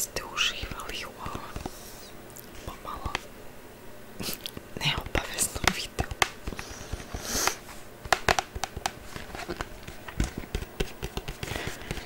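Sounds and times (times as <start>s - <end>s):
small clicks and taps: 5.6s - 6.6s
breathy hiss: 6.4s - 7.8s.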